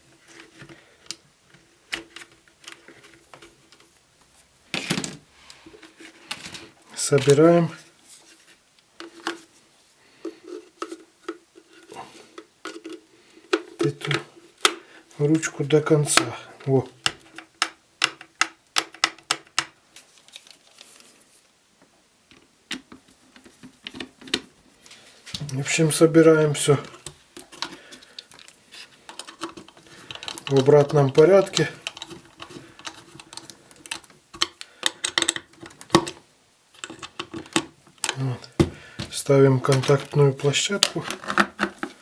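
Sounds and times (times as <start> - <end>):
kettle parts clicking and tapping: 10.2 - 14.9, 16.0 - 19.8, 26.5 - 36.2, 36.8 - 42.0.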